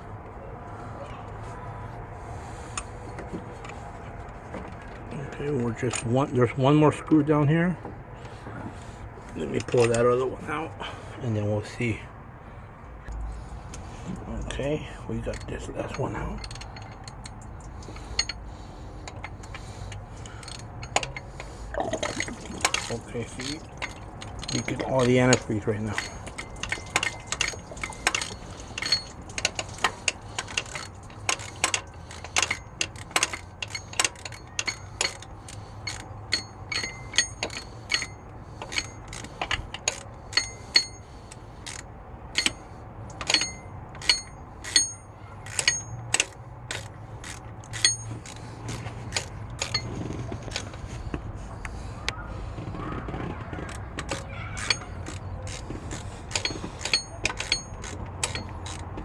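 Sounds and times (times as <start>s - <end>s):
low steady hum: 8.2s - 41.8s
sharp metallic clicks and ticks: 14.4s - 52.2s, 52.8s - 59.0s.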